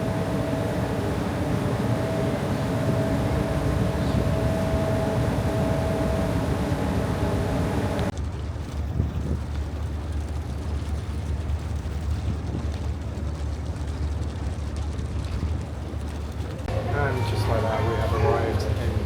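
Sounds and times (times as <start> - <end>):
ferry engines droning: 0.0 - 8.1, 15.6 - 19.0
wind and water hiss: 0.0 - 8.2.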